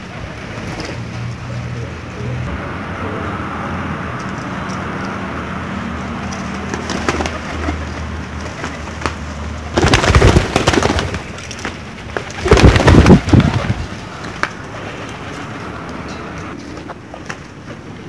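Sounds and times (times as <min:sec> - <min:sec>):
pigeon wings flapping: 0:00.0 - 0:01.4, 0:06.2 - 0:16.0.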